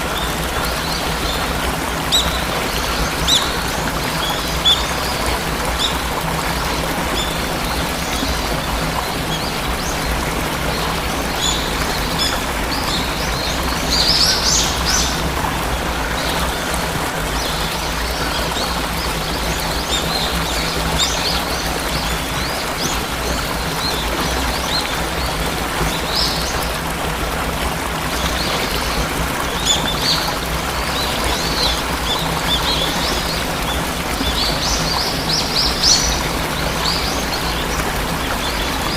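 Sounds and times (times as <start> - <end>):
small birds chirping: 0.0 - 26.7
water rushing: 0.0 - 38.9.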